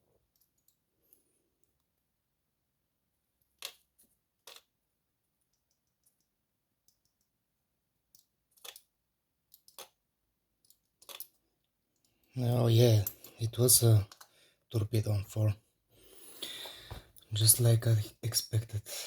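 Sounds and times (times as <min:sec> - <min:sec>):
small metal lock parts clicking: 0:08.1 - 0:08.9, 0:09.5 - 0:10.0, 0:10.6 - 0:11.4.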